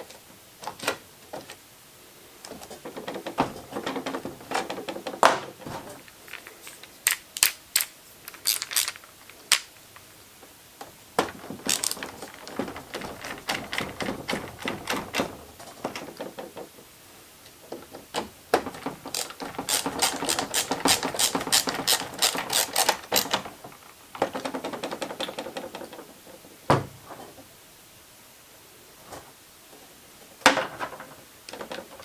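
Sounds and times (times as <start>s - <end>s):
fast mechanical clicking: 6.1s - 10.0s, 11.7s - 15.4s, 18.8s - 23.6s.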